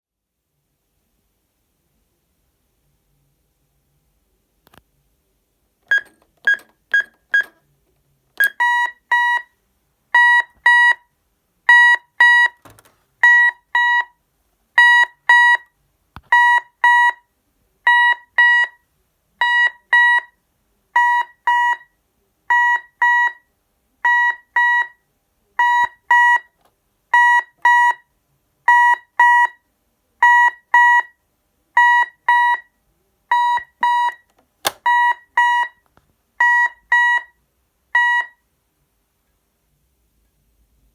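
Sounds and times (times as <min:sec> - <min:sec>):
intruder alarm beeping: 0:05.9 - 0:07.5.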